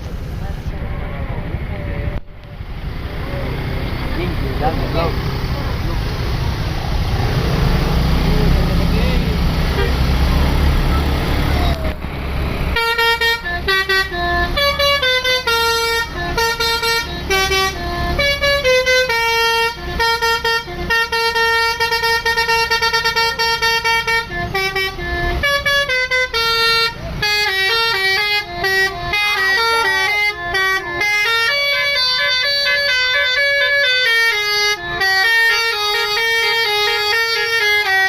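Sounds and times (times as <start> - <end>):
low engine rumble: 0.0 - 38.0
musical air horn playing a tune: 12.8 - 38.0.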